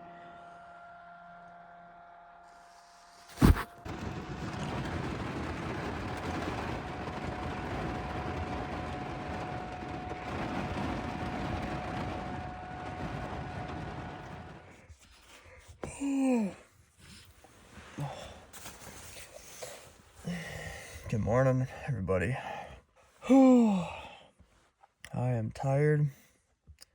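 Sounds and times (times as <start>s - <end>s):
loud thunder crack: 3.8s - 14.7s
heavy rain pouring: 3.9s - 14.7s.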